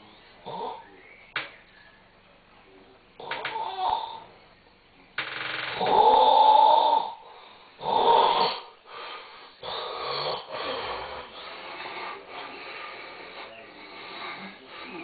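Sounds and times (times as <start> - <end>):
person snoring: 5.8 - 7.2, 7.8 - 15.0.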